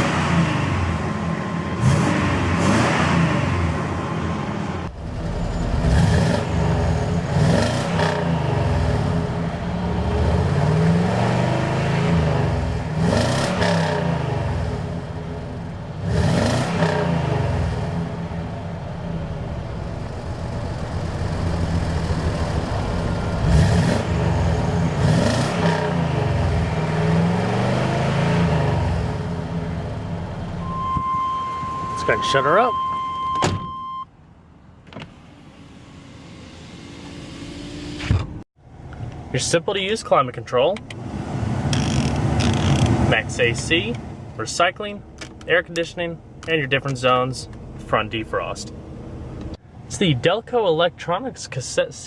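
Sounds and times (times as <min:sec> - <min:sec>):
truck engine revving: 0:00.0 - 0:33.0.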